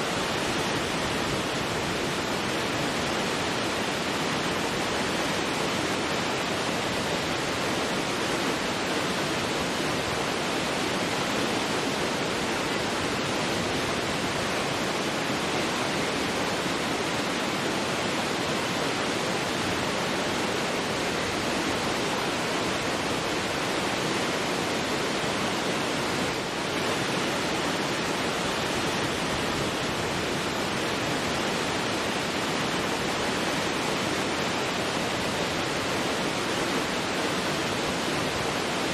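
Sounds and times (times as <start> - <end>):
waterfall crashing: 0.0 - 38.9.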